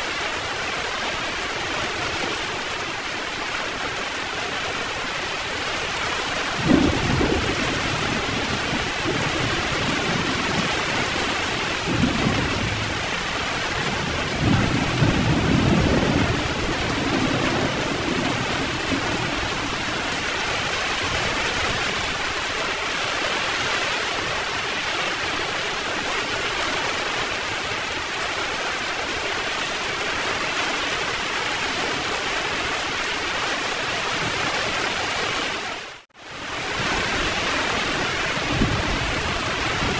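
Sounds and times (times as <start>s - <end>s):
heavy rain pouring: 0.0s - 39.9s
thunder: 6.5s - 19.8s, 38.4s - 39.9s.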